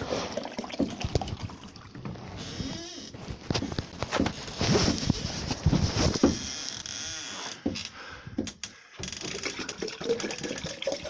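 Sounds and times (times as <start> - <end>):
short creak: 2.2 - 5.0, 6.0 - 9.4.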